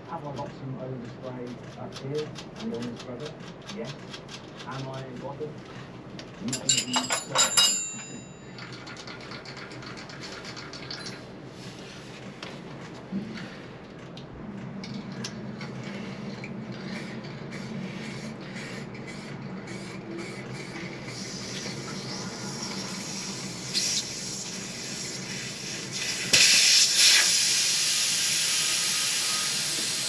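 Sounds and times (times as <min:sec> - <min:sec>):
paint spray hissing: 0:21.1 - 0:30.0.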